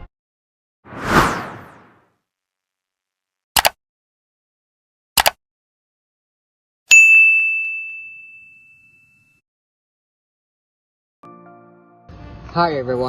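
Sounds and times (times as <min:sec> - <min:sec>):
double clicks: 0:03.6 - 0:03.8, 0:05.2 - 0:05.4
bell-like ding: 0:06.9 - 0:09.4.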